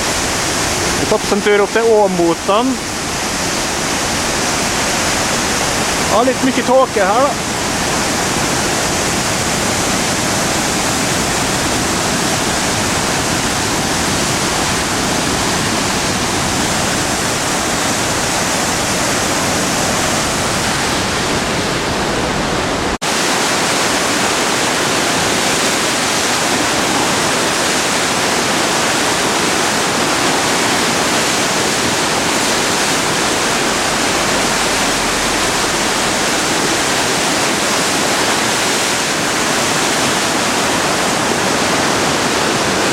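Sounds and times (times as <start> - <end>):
floodwater rushing: 0.0 - 42.9.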